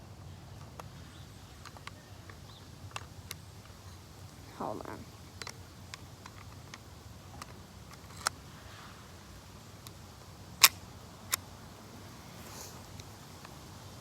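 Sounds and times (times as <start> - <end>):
airsoft pistol clicks: 10.6 - 11.5.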